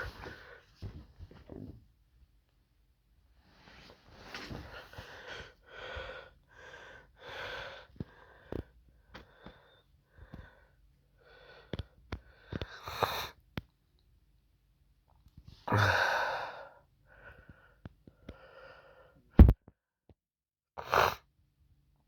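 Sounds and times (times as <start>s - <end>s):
person sniffling: 15.6s - 16.8s.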